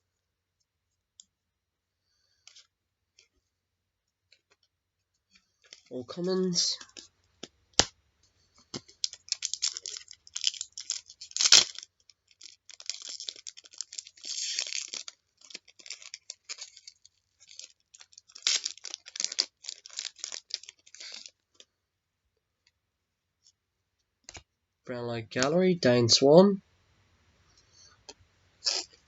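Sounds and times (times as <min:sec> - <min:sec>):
foil wrapper crinkling and tearing: 0:05.6 - 0:07.1, 0:08.6 - 0:21.7.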